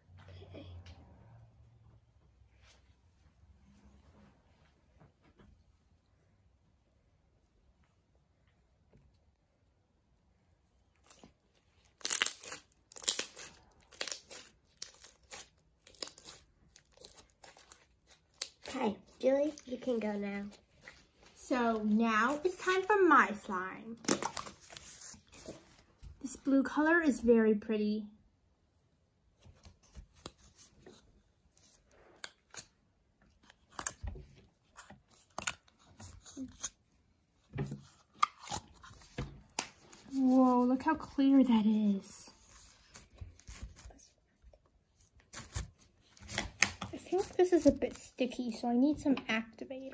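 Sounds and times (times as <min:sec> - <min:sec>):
slime squelching: 0:10.9 - 0:25.8.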